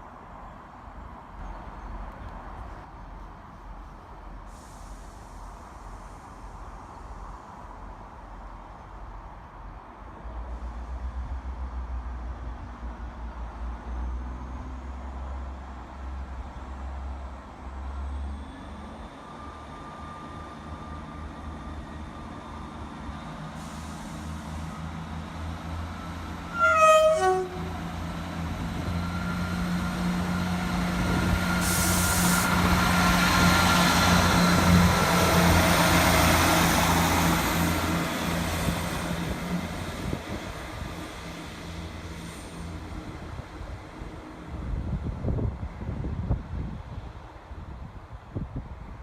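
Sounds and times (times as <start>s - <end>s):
train running noise: 17.7s - 49.0s
train horn blast: 26.5s - 28.0s.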